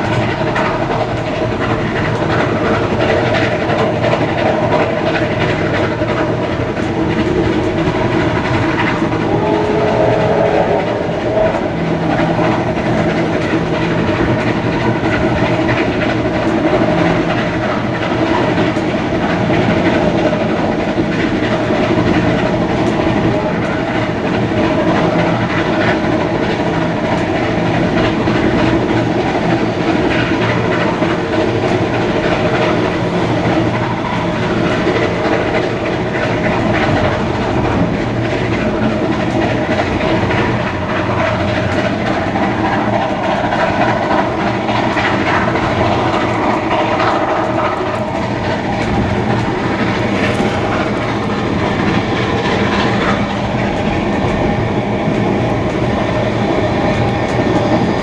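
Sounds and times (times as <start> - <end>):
train wheels clickety-clack: 0.0 - 58.0
brief wavering tone: 9.2 - 12.6.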